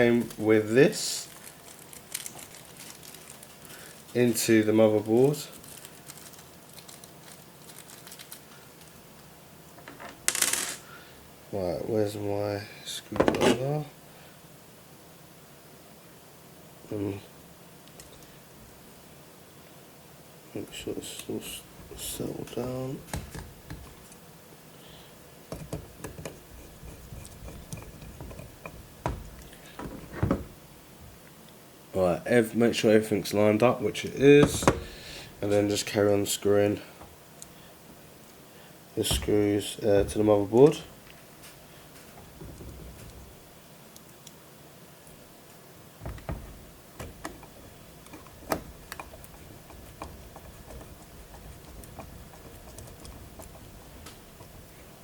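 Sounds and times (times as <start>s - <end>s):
small parts clicking and tapping: 25.5s - 30.0s, 46.0s - 54.6s.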